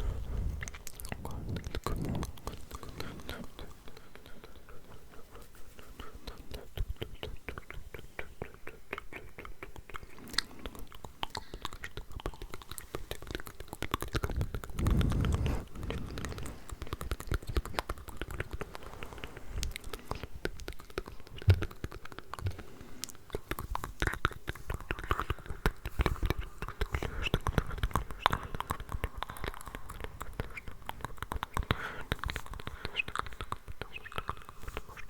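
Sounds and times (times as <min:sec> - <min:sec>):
person whispering: 0:00.0 - 0:07.4
wet mouth clicks and smacks: 0:00.2 - 0:35.0.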